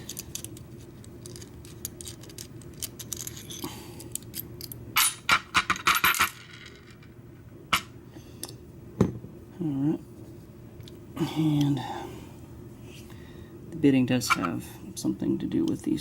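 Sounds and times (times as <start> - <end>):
small metal parts clicking: 0.0 - 6.8.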